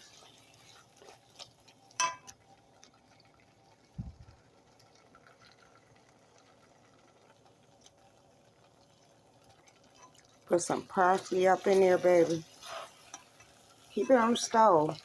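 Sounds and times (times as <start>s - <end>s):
wet stirring of noodles: 0.0s - 15.0s
metal utensil clinking on pot: 2.0s - 2.4s, 9.9s - 15.0s
dull low thump: 4.0s - 4.3s.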